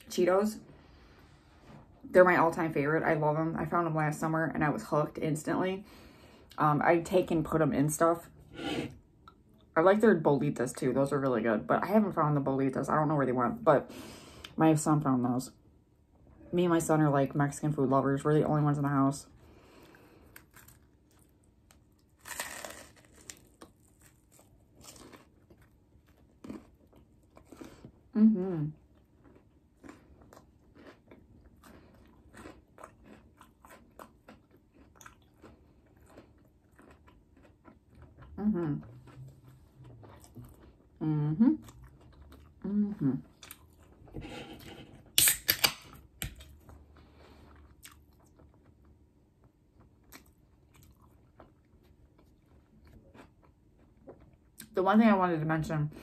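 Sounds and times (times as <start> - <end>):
crunchy food chewing: 19.7 - 28.1, 28.8 - 41.0, 46.3 - 54.7.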